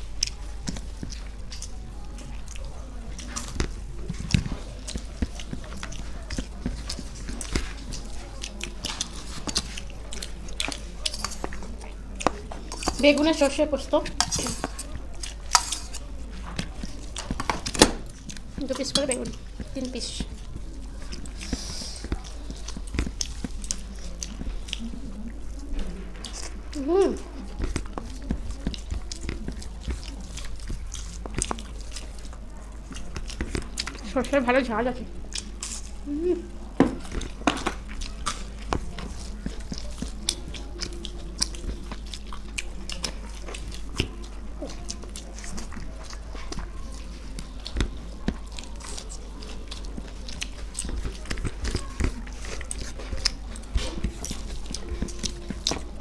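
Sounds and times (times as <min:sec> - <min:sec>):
wet chewing: 0:00.0 - 0:56.0
lip smacks: 0:00.2 - 0:13.5, 0:35.2 - 0:56.0.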